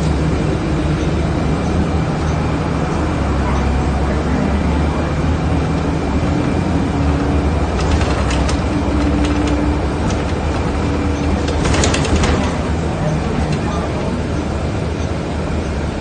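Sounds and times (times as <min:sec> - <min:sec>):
vehicle rumbling: 0:00.0 - 0:16.0
sharp clicks and rattles: 0:07.7 - 0:13.8.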